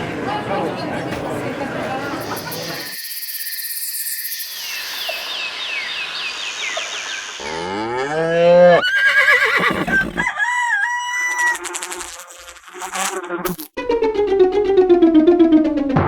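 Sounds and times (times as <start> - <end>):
hissy background: 2.2 - 7.4.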